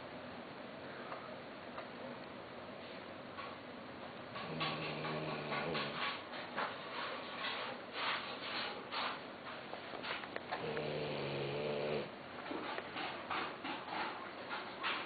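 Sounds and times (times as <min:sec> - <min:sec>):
dog snoring: 0:04.3 - 0:06.2, 0:10.5 - 0:12.2.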